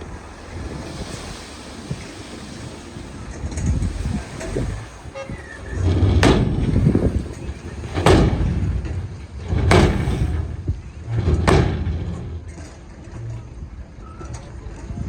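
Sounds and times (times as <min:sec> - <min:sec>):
earthmoving machinery rumbling: 0:00.0 - 0:14.9
loud metallic bangs: 0:00.3 - 0:13.3.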